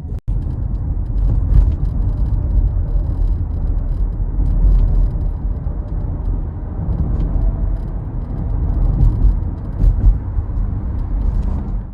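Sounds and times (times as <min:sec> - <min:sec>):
car road rumble: 0:00.0 - 0:11.9.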